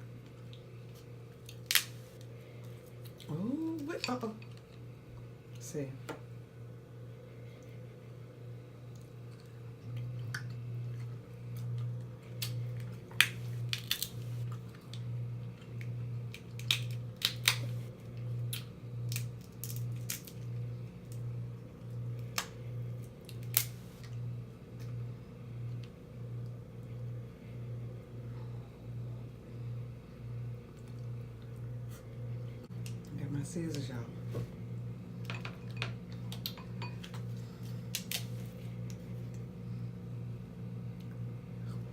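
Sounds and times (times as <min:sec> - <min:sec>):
low pulsing hum: 0:00.0 - 0:41.9
crab shells cracking: 0:01.4 - 0:02.3, 0:11.6 - 0:15.0, 0:15.7 - 0:20.5, 0:22.2 - 0:24.0, 0:37.9 - 0:38.4.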